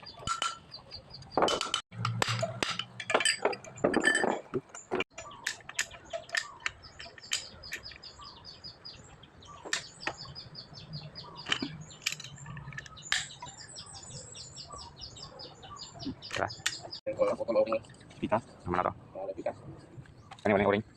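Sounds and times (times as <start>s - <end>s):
small birds chirping: 0.0s - 1.8s, 4.7s - 20.9s.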